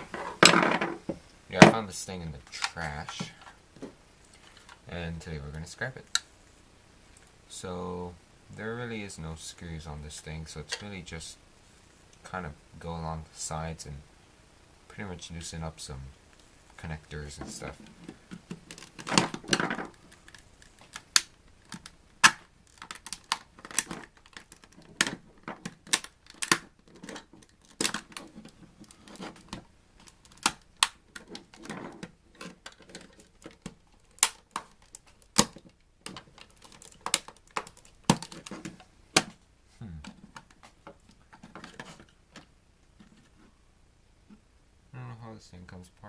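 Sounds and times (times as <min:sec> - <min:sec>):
plastic casing clicks and knocks: 0:18.0 - 0:39.4.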